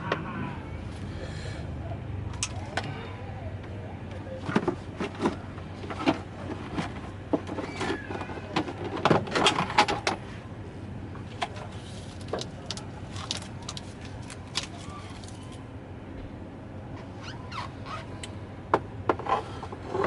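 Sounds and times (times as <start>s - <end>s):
steady low hum: 0.0s - 7.6s.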